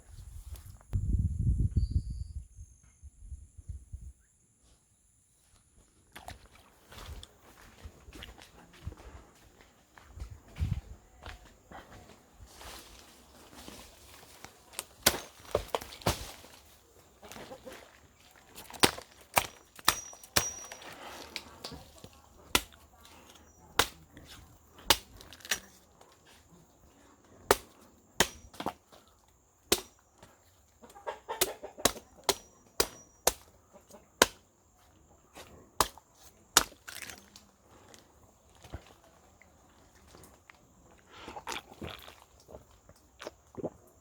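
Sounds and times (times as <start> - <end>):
chickens clucking: 17.0 - 18.2, 30.7 - 32.4, 33.5 - 34.2.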